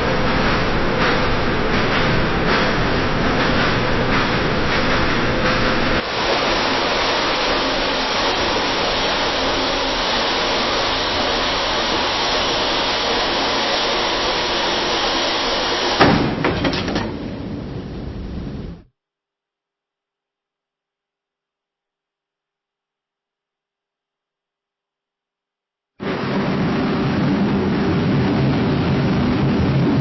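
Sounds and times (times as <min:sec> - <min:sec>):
metal clanks: 0:16.0 - 0:17.4
loud metal bang: 0:16.0 - 0:17.6.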